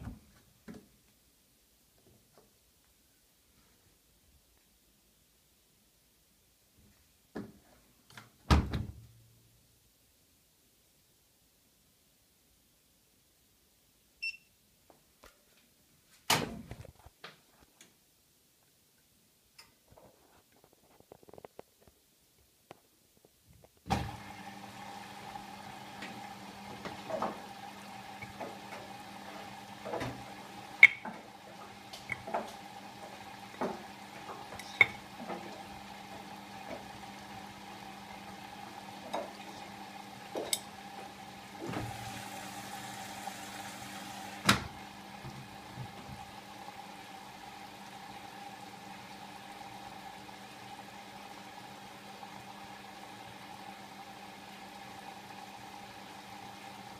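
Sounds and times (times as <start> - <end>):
washing machine motor hum: 23.9 - 56.9.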